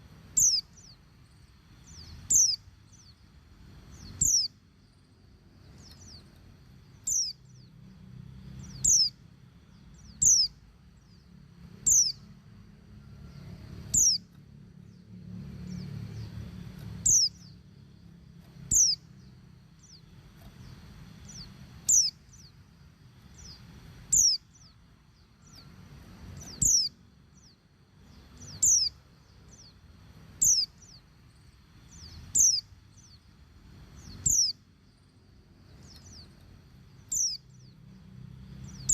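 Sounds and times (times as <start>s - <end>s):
bird giving high falling calls: 0.3s - 1.0s, 1.8s - 3.2s, 3.9s - 4.6s, 10.0s - 10.6s, 11.8s - 12.3s, 13.0s - 14.3s, 17.0s - 17.6s, 18.7s - 19.1s, 21.2s - 22.5s, 23.3s - 24.8s, 26.4s - 29.8s, 31.9s - 33.2s, 34.0s - 34.6s.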